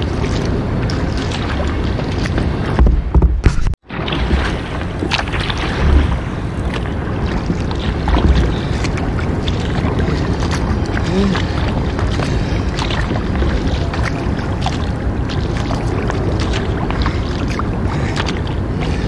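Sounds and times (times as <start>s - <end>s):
paddle splashing water: 0.0s - 19.0s
water rushing: 0.0s - 19.0s.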